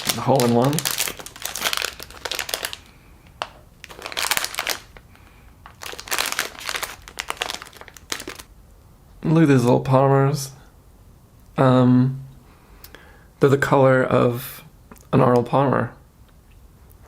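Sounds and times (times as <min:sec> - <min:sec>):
plastic bag crinkling: 0:00.0 - 0:08.5.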